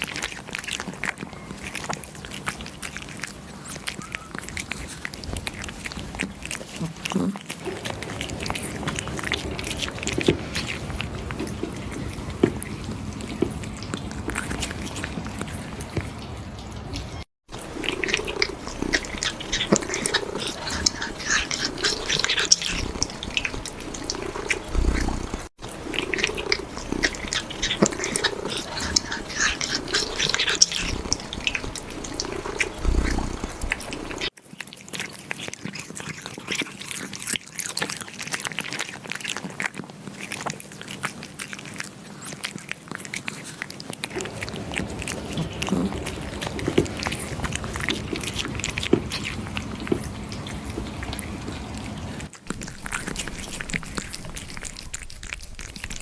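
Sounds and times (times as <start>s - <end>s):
kittens chewing wetly: 0.0s - 56.0s
low cat vocalizations: 2.3s - 16.3s, 44.1s - 56.0s.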